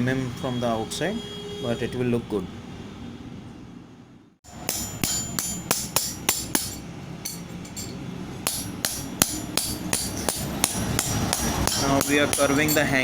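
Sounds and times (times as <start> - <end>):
hammer striking metal: 4.5 - 13.0.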